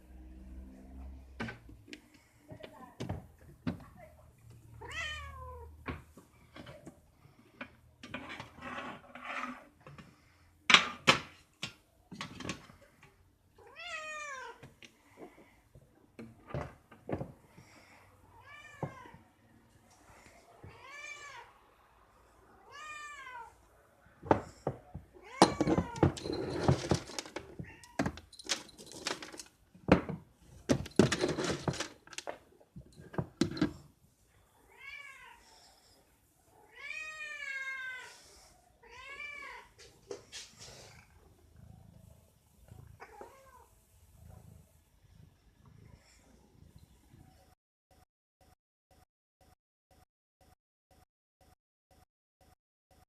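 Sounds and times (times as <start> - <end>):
cat meowing: 4.8 - 5.8, 13.6 - 14.6, 22.6 - 23.6, 36.6 - 38.2, 38.8 - 39.8, 43.0 - 43.7
clicks and rustling: 25.4 - 33.8.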